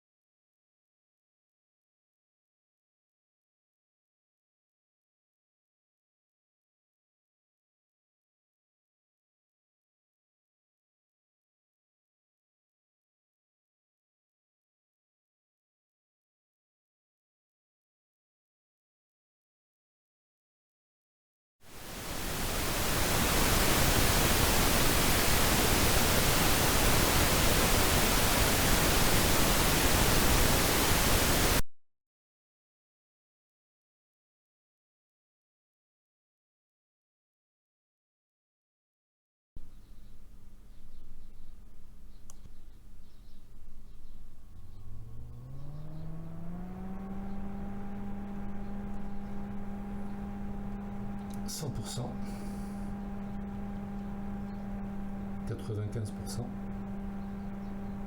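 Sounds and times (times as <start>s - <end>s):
broadband noise hiss: 21.7s - 31.6s, 47.6s - 58.0s
fan spinning up whir: 21.7s - 31.6s, 39.6s - 58.0s.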